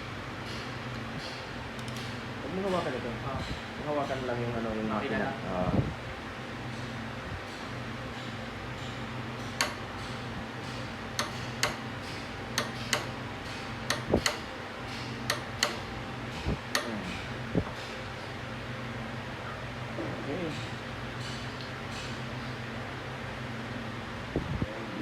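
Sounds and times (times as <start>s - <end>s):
steady low hum: 0.0s - 25.0s
hand tools clicking and tapping: 7.5s - 17.0s.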